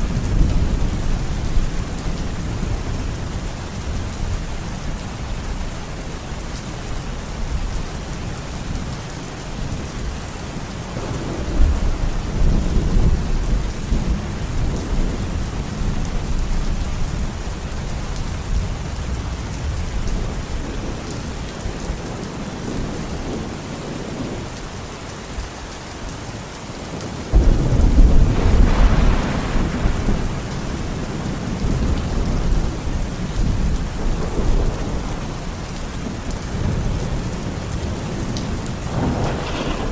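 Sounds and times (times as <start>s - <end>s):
heavy rain falling: 0.0s - 39.9s
thunder rumbling: 10.8s - 17.4s, 27.3s - 39.9s.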